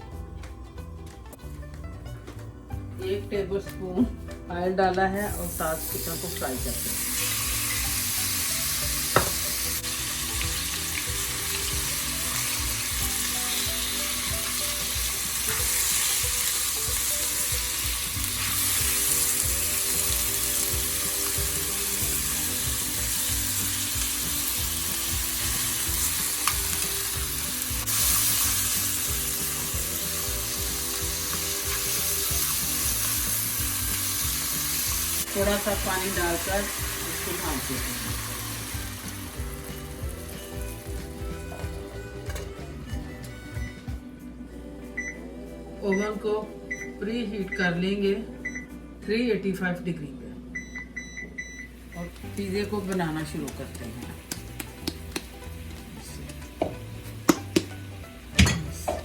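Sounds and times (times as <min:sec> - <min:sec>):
chicken sizzling in a pan: 0:05.3 - 0:41.8, 0:51.9 - 0:59.0.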